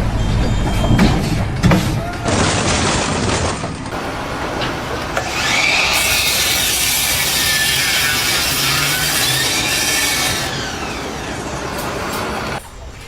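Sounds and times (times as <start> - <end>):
tool scraping material: 5.9 - 10.6.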